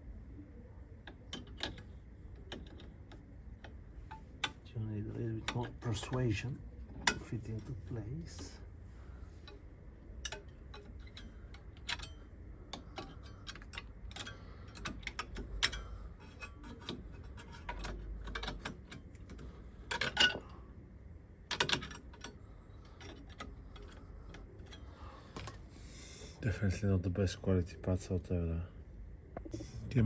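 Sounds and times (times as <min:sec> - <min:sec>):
light metal clicks and taps: 0:10.2 - 0:20.4.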